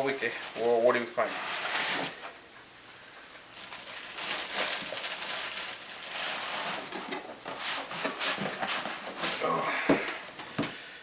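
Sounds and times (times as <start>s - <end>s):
packaging rustling and scraping: 0.4s - 2.4s, 3.5s - 10.3s.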